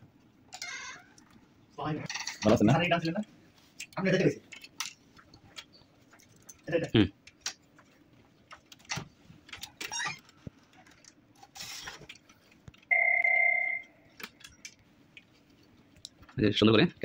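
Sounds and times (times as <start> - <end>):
electronic beep: 12.9 - 14.1.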